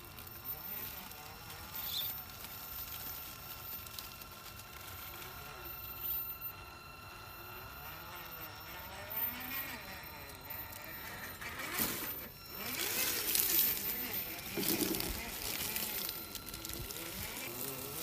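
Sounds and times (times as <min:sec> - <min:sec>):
electric motor whining: 0:00.0 - 0:18.0.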